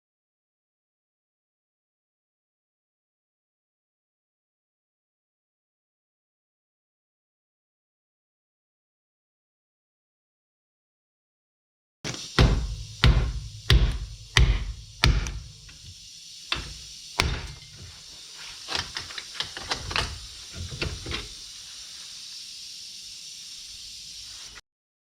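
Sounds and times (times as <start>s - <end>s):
hammer blows on metal: 12.1s - 15.9s, 16.5s - 17.9s.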